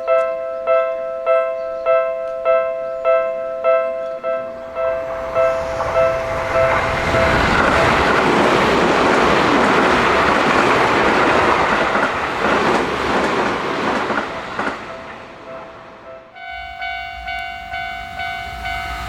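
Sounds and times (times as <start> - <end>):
crossing warning bell: 0.0 - 19.0
train wheels clacking over rail joints: 5.0 - 15.3.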